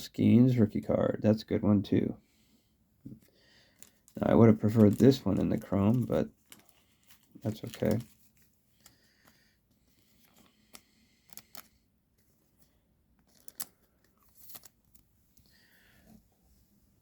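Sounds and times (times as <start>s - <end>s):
trading card clicks and rustles: 3.1s - 15.6s.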